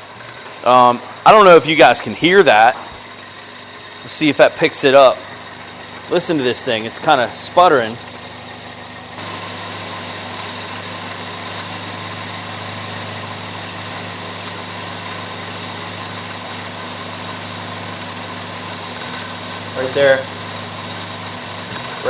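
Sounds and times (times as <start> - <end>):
car engine idling roughly and sputtering: 2.0 - 22.0.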